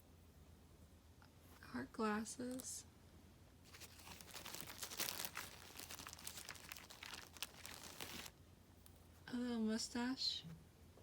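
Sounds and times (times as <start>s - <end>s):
plastic packaging crinkling: 3.7s - 8.3s.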